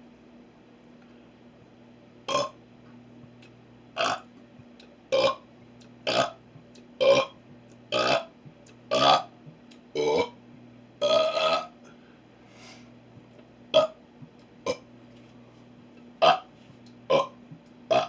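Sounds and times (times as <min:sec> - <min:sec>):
faint steady hum: 0:00.0 - 0:18.0
man burping: 0:02.3 - 0:02.6, 0:04.0 - 0:04.2, 0:05.1 - 0:05.4, 0:06.1 - 0:06.4, 0:07.0 - 0:08.3, 0:08.9 - 0:09.3, 0:10.0 - 0:10.4, 0:11.0 - 0:11.8, 0:13.7 - 0:14.0, 0:14.6 - 0:14.8, 0:16.2 - 0:16.5, 0:17.1 - 0:18.0.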